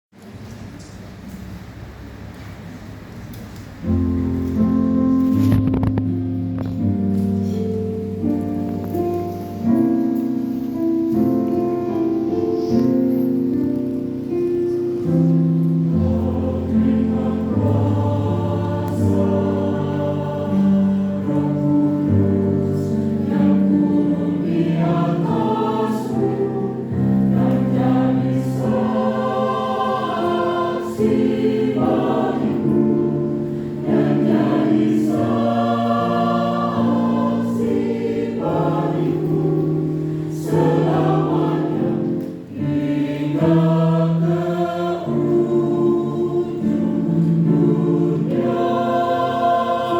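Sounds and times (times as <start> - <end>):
choir singing gospel song: 15.0 - 49.9.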